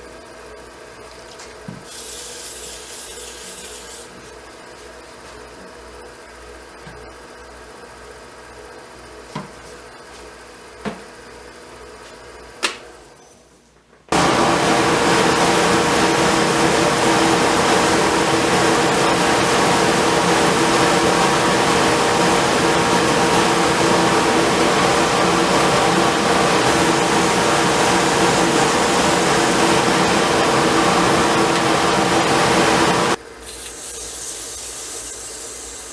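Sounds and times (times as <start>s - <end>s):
workshop machine motor running: 14.1s - 33.2s.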